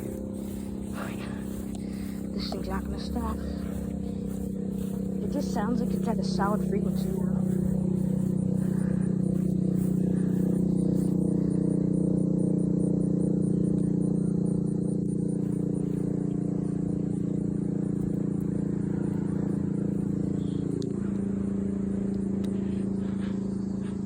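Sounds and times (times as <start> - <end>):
siren coasting down: 0.0 - 11.6.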